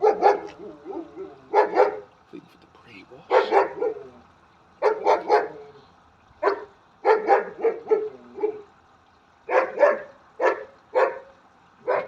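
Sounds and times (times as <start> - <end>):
dog barking: 0.0 - 2.1, 3.3 - 4.2, 4.8 - 5.8, 6.4 - 8.7, 9.5 - 12.0.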